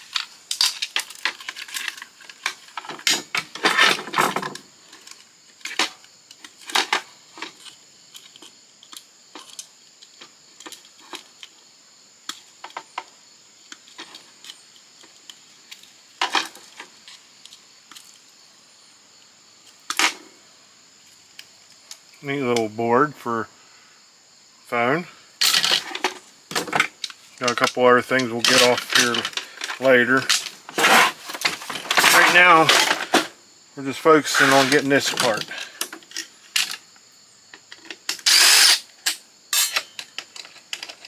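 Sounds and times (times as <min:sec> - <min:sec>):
plastic and metal parts clattering: 0:00.0 - 0:08.5, 0:16.2 - 0:17.0, 0:25.4 - 0:33.4, 0:34.2 - 0:36.8, 0:37.6 - 0:41.0.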